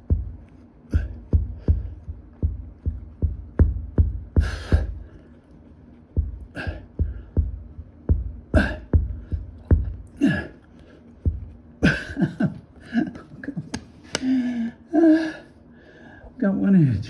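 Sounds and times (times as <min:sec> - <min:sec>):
heavy breathing: 0:00.9 - 0:03.0, 0:04.0 - 0:12.2, 0:14.0 - 0:16.4
man grunting with effort: 0:08.6 - 0:09.0.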